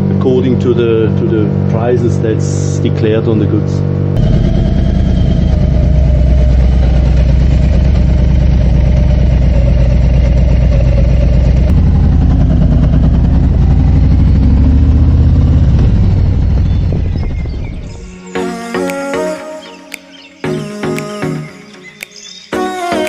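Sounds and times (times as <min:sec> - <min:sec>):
motorcycle engine running: 0:00.0 - 0:18.2.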